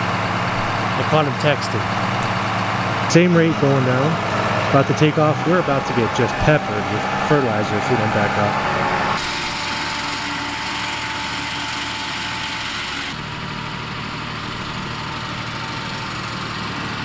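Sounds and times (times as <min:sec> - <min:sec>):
fertilizer spreader engine running: 0:00.0 - 0:17.0.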